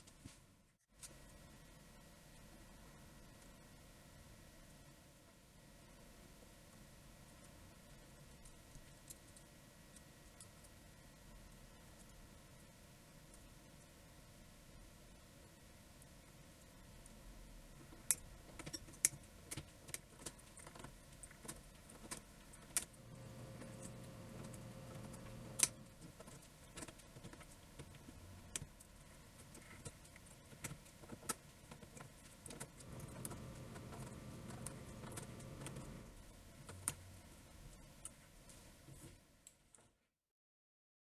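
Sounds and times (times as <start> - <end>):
keyboard parts clicking: 20.2 - 28.7, 32.5 - 37.0
low hum: 22.9 - 26.0, 32.8 - 36.2.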